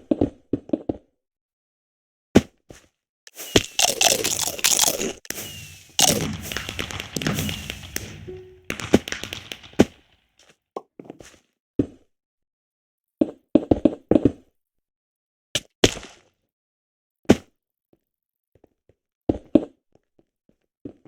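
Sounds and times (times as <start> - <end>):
loud crash with falling tones: 3.3 - 10.1.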